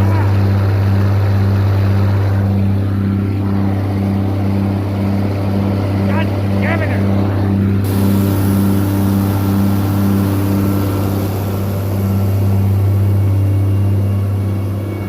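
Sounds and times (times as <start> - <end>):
heavy engine running: 0.0 - 15.0.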